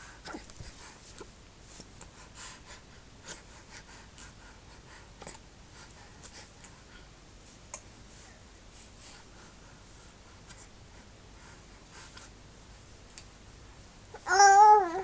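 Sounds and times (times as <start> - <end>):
faint breathing: 8.1 - 12.4.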